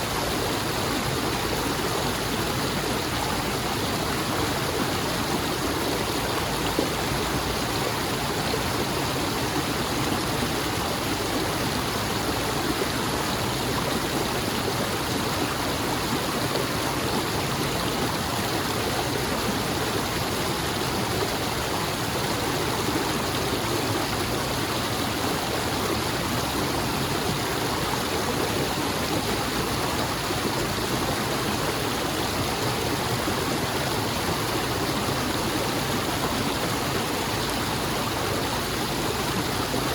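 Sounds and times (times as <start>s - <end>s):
flowing water rushing: 0.0s - 39.9s.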